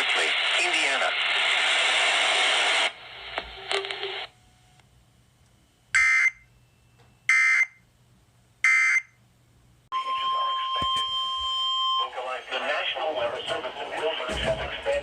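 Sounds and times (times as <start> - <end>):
radio broadcast hiss: 0.0 - 4.3, 12.0 - 15.0.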